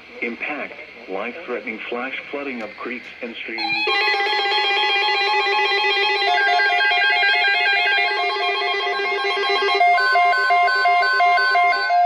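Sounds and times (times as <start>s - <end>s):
warbling alarm tones: 3.6s - 12.0s.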